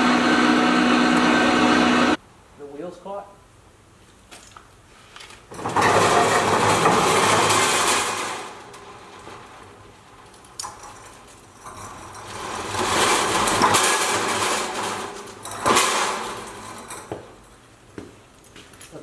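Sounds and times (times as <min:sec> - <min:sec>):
motor running: 0:00.0 - 0:02.2.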